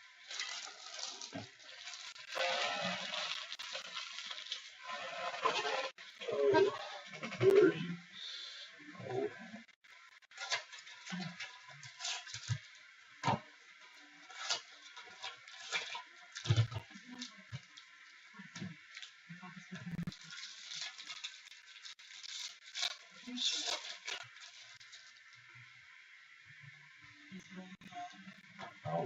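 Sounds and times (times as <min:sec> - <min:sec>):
cards and packaging rustling: 0:20.1 - 0:25.3.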